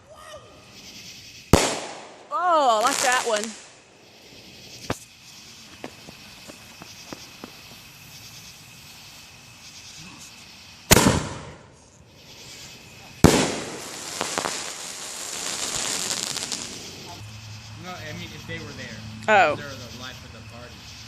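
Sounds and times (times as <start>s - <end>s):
hissing crackle of fireworks: 0.0s - 18.9s
firework bangs: 0.6s - 8.2s, 10.8s - 17.2s.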